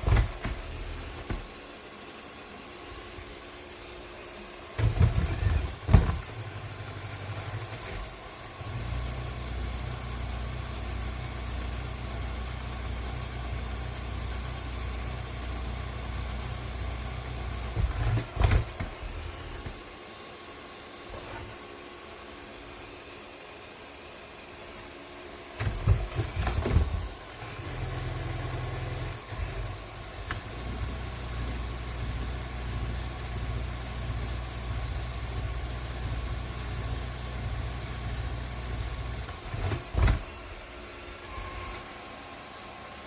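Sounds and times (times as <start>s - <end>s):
clunks and rattles: 0.0s - 1.6s, 4.8s - 8.9s, 17.4s - 19.8s, 25.6s - 40.6s
robot vacuum motor hum: 2.8s - 20.0s, 25.6s - 42.1s.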